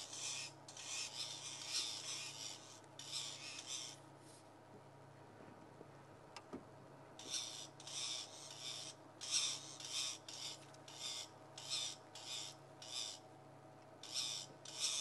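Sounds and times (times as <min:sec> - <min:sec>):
bird harsh alarm calls: 0:00.0 - 0:04.0, 0:07.2 - 0:13.3, 0:14.0 - 0:15.0.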